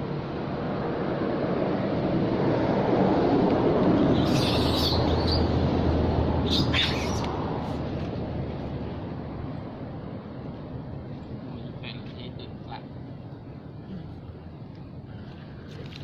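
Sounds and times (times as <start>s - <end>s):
rushing background noise: 0.0s - 16.0s
high-pitched animal calls: 4.1s - 5.5s, 6.4s - 7.3s.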